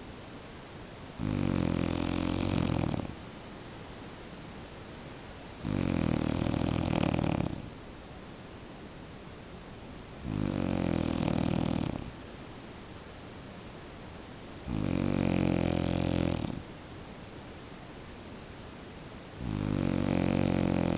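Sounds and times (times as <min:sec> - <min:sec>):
man snoring: 0:01.1 - 0:03.2, 0:05.5 - 0:07.7, 0:10.1 - 0:12.2, 0:14.6 - 0:16.6, 0:19.3 - 0:20.9.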